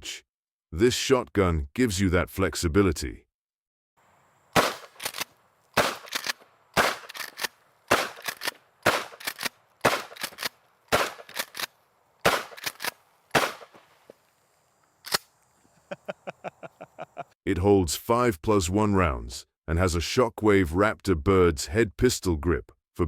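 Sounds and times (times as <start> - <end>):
shotgun shots: 4.5 - 13.9.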